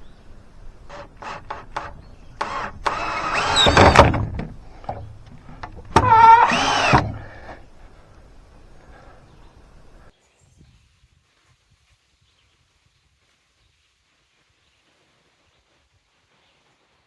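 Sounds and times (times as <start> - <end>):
light clicks: 0.0 - 10.1
power drill whining under load: 0.0 - 10.1.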